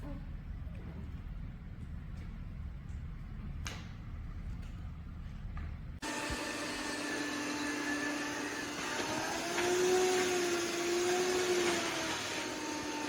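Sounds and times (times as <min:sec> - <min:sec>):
robot vacuum motor whine: 0:06.0 - 0:13.0.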